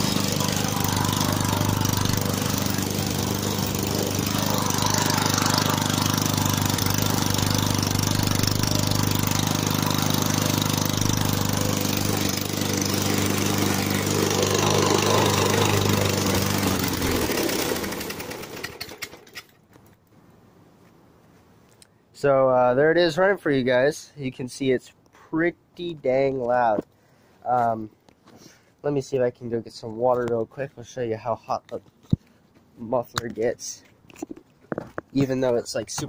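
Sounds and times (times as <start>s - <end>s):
lawn mower engine running: 0.0s - 19.5s.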